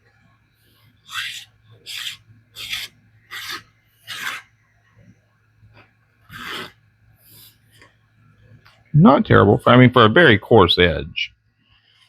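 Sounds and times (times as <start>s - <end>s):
knife rasping through paper towel: 1.1s - 4.4s, 6.3s - 6.7s.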